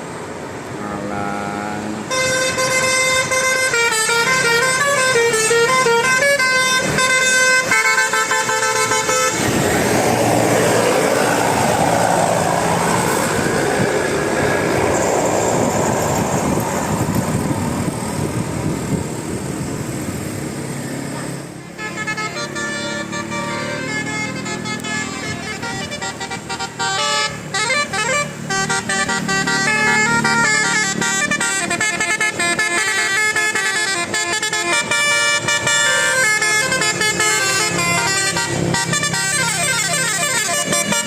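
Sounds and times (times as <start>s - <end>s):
musical bus horn melody: 2.0s - 10.7s, 21.1s - 41.0s
loud rushing noise: 8.8s - 21.6s.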